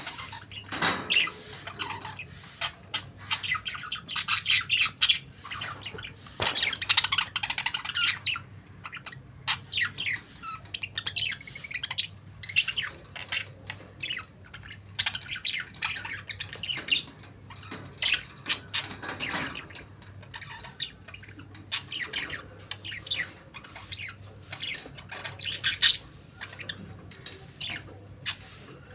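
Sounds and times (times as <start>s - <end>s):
budgerigar chirping and warbling: 0.0s - 18.9s, 20.4s - 26.8s.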